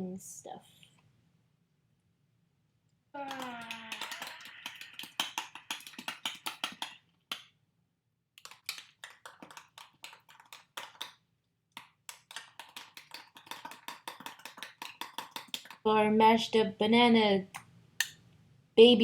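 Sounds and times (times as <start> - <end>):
bananas being mashed in a bowl: 3.4 - 7.5, 8.4 - 15.9.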